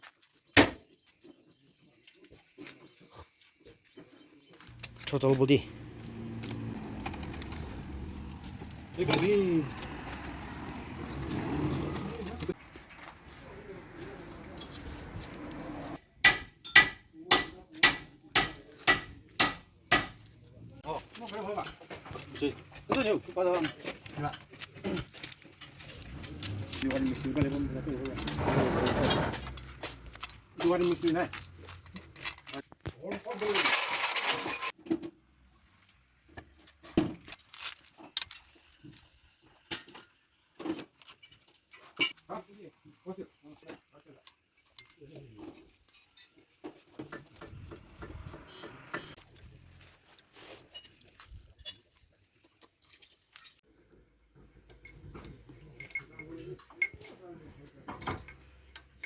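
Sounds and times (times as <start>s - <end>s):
knocks and clinks: 21.5s - 34.7s, 54.5s - 59.0s.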